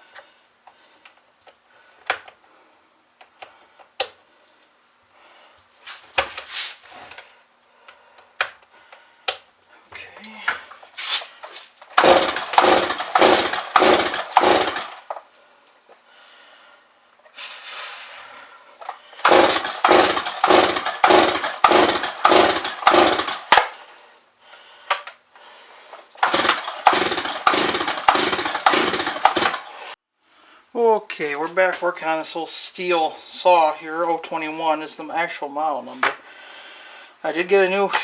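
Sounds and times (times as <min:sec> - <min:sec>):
chainsaw pull-cord starter strokes: 0:11.8 - 0:15.3, 0:18.8 - 0:23.9, 0:26.2 - 0:30.0.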